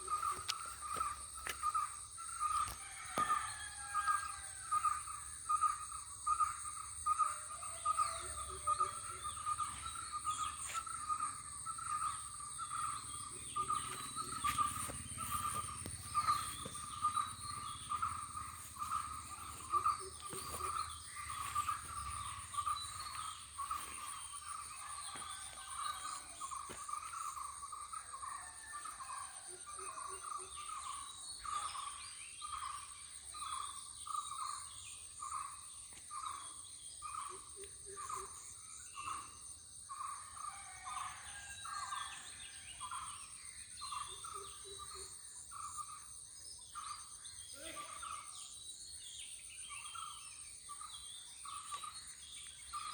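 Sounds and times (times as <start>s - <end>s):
pulsing chorus of animal calls: 4.6s - 28.8s.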